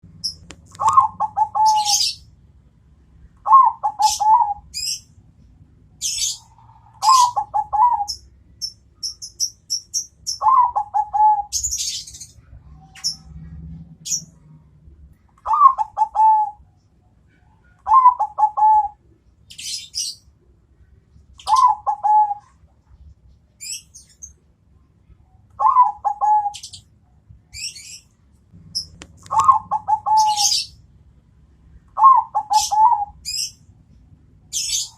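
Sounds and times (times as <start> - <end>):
small bird chirping: 0.0 - 2.3, 3.4 - 5.2, 5.9 - 14.4, 15.2 - 20.4, 23.2 - 30.8, 32.0 - 33.8, 34.4 - 34.9
dove cooing: 0.7 - 2.2, 3.4 - 5.0, 6.0 - 8.2, 10.4 - 12.1, 15.4 - 16.6, 17.8 - 19.0, 21.4 - 22.6, 25.6 - 26.8, 28.8 - 30.8, 31.9 - 33.5.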